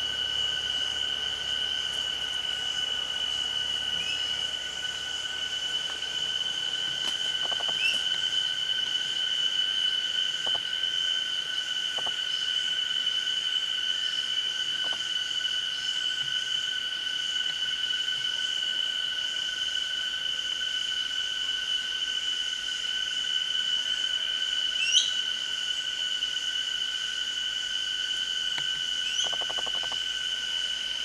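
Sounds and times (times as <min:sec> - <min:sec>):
high-pitched insect drone: 0:00.0 - 0:31.0
faint bird chirps: 0:04.0 - 0:04.4, 0:24.8 - 0:25.2, 0:29.0 - 0:30.0.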